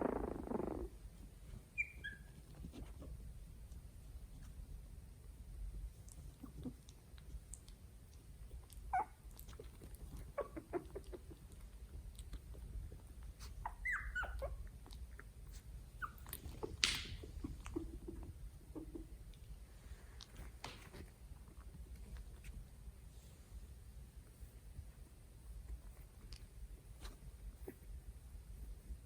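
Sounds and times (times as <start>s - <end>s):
puppies whimpering and squeaking: 1.7s - 2.5s, 8.9s - 9.2s, 10.2s - 11.4s, 13.4s - 14.8s, 15.9s - 16.8s.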